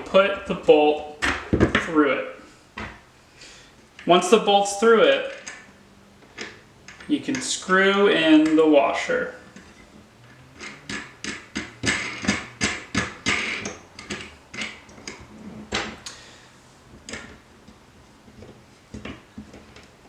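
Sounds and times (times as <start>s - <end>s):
wooden loom pieces knocking: 10.2s - 16.0s.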